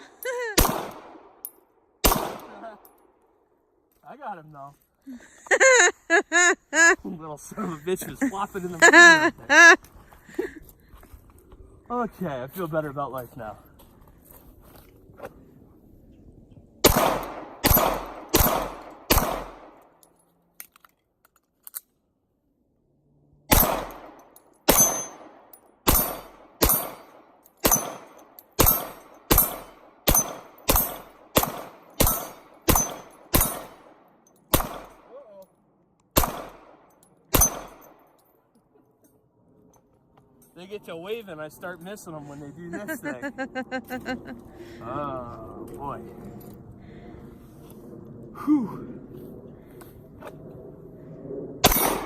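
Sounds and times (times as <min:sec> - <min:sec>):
pistol shots: 0:00.6 - 0:01.4, 0:02.0 - 0:02.8, 0:16.8 - 0:19.8, 0:23.5 - 0:35.1, 0:36.1 - 0:38.0, 0:51.6 - 0:52.0.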